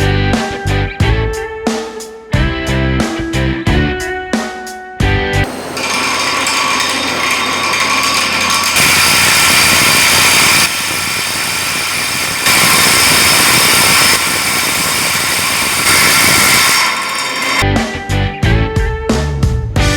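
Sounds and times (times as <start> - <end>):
power tool running: 5.4 - 17.6.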